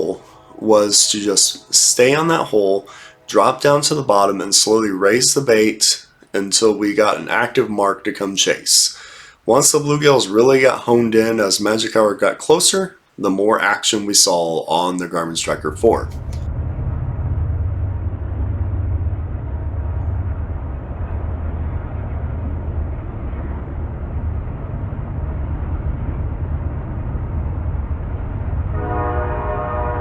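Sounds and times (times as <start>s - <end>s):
train horn chord: 0.0s - 6.2s, 28.7s - 30.0s
train rumbling past: 0.0s - 9.7s, 15.4s - 30.0s.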